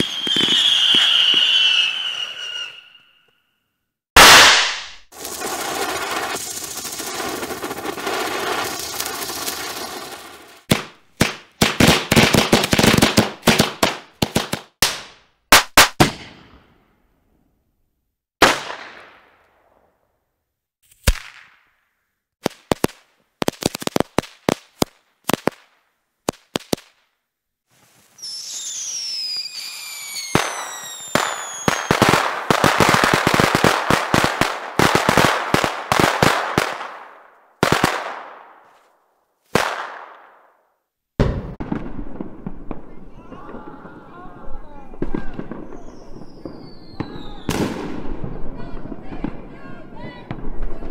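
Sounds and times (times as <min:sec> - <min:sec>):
firework bangs and pops: 0:00.0 - 0:02.8, 0:04.2 - 0:16.8, 0:18.4 - 0:19.7, 0:20.8 - 0:21.8, 0:22.4 - 0:27.1, 0:28.2 - 0:38.8, 0:39.5 - 0:40.6, 0:41.2 - 0:49.5
firework hiss and whistles: 0:00.0 - 0:10.7, 0:27.8 - 0:32.1, 0:45.5 - 0:47.8
rapid firework crackling: 0:04.2 - 0:16.1, 0:22.4 - 0:27.1, 0:28.1 - 0:37.0.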